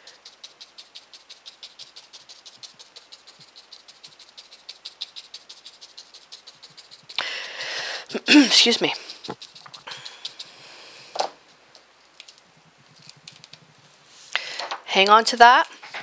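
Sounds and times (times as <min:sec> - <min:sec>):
paint dabbing through stencil: 0:00.0 - 0:11.1
loud breathy rush of noise: 0:07.1 - 0:08.2, 0:08.9 - 0:11.3, 0:14.0 - 0:14.8.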